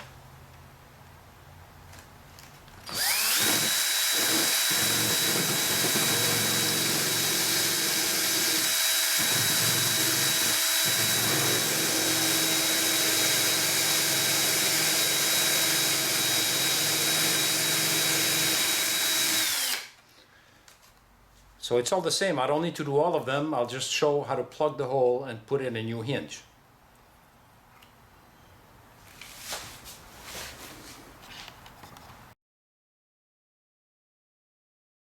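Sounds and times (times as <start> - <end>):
cordless drill whining: 2.8 - 20.0.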